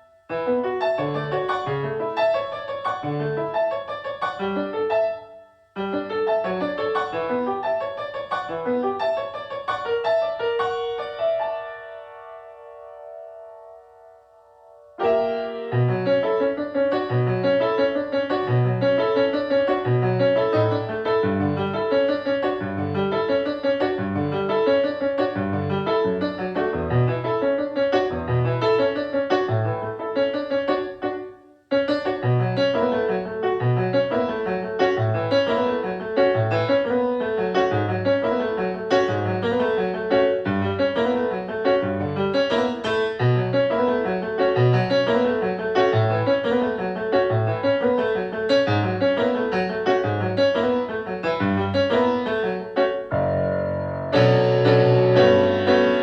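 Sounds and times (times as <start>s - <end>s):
band playing keyboard-led song: 54.2s - 56.0s.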